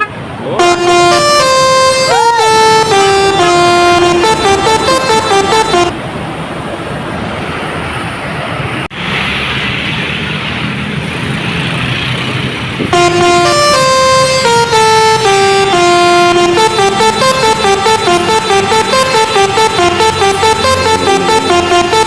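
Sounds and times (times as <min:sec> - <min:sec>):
bus musical horn melody: 0:00.0 - 0:06.0, 0:12.9 - 0:22.0
engine and traffic noise: 0:00.0 - 0:22.0.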